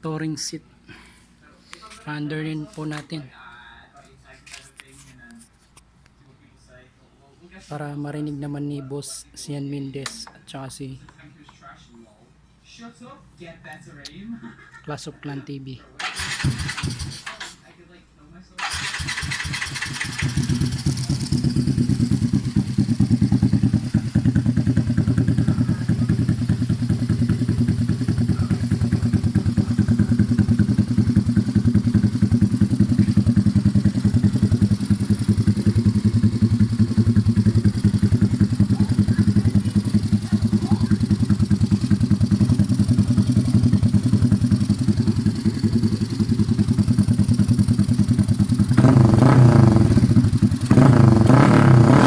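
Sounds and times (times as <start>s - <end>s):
scooter engine idling: 16.0s - 17.4s, 18.6s - 52.0s.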